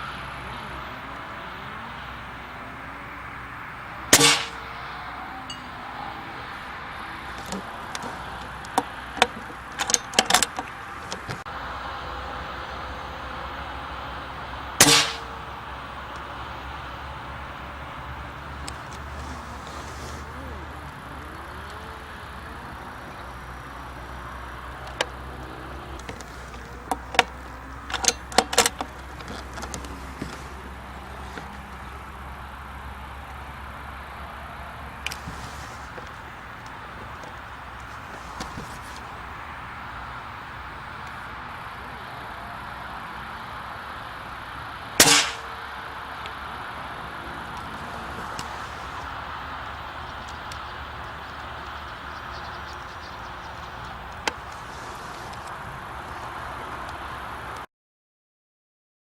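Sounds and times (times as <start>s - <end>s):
low background rumble: 0.0s - 56.8s
air rifle shot: 4.1s - 4.7s, 14.8s - 15.3s, 45.0s - 45.5s
sharp metallic clicks: 4.1s - 4.8s, 14.8s - 16.3s, 45.0s - 45.5s.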